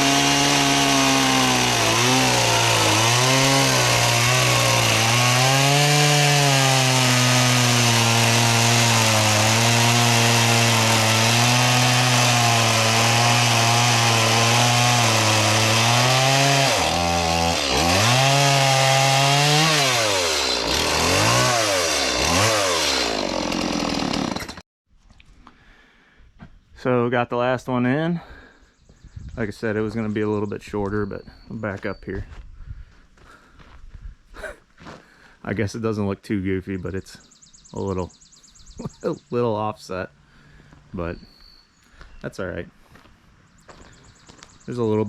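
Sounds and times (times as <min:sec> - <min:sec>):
chainsaw revving: 0:00.0 - 0:24.6.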